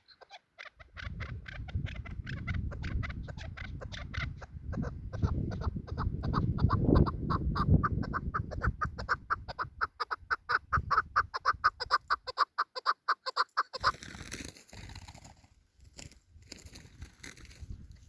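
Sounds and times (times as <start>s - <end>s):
partridge calling: 0.0s - 14.0s.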